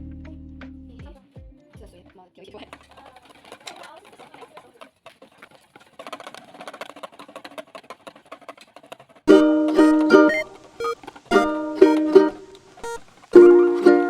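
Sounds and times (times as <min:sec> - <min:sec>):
faint crackling and rustling: 0:02.5 - 0:11.4, 0:12.2 - 0:13.4
plucked ukulele music: 0:09.3 - 0:14.0.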